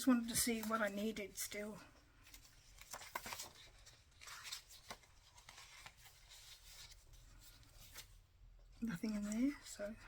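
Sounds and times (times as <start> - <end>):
paper rustling and crinkling: 0.0 - 10.0.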